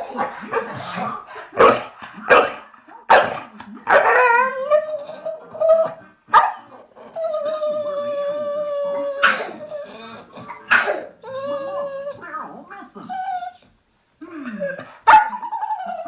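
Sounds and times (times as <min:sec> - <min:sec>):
dog barking and yelping: 0:00.0 - 0:13.6, 0:14.8 - 0:16.0
dog whining: 0:03.9 - 0:06.0, 0:07.0 - 0:13.7.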